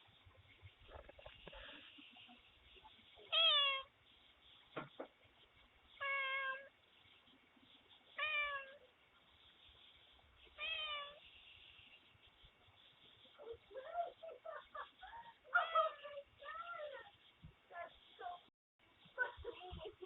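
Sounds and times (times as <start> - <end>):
cat meowing: 3.3 - 3.9, 6.0 - 6.7, 8.2 - 8.9, 10.6 - 11.2.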